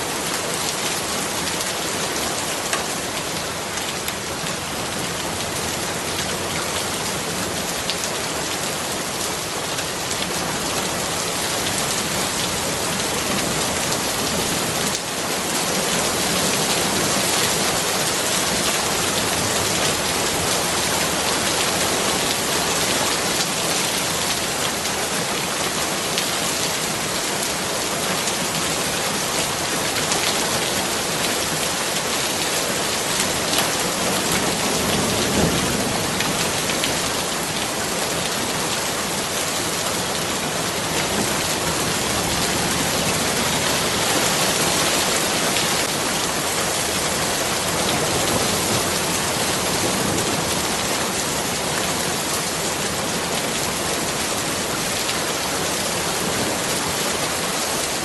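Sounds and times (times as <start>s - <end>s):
heavy rain falling: 0.0s - 58.0s.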